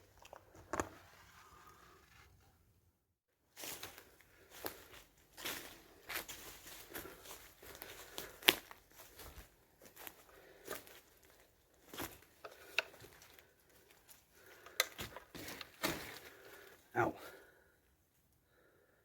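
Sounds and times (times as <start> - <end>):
footsteps crunching through dry debris: 3.6 - 16.8.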